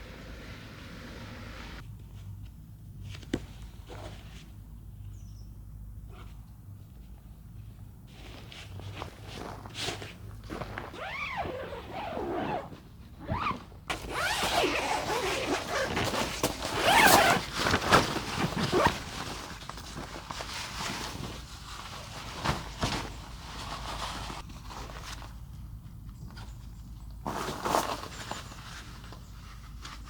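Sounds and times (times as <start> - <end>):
rustling and scraping: 8.1 - 25.5, 26.2 - 30.0.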